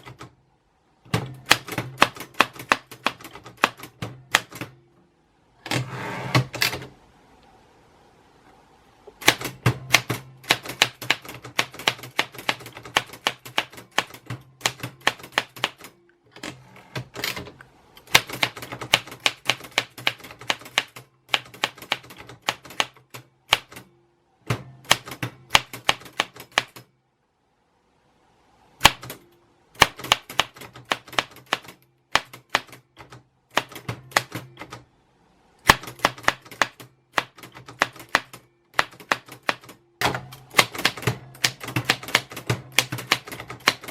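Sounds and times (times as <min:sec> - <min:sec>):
typewriter keys clacking: 0:40.5 - 0:43.9.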